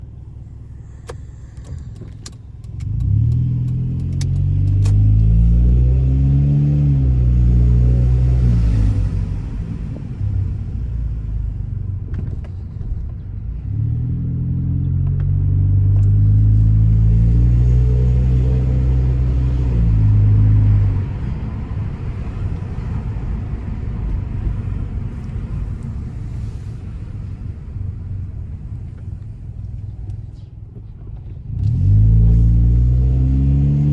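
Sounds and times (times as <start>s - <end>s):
car engine accelerating: 0.0s - 33.9s
exhaust rumble: 0.0s - 33.9s
sharp clicks: 0.9s - 5.0s.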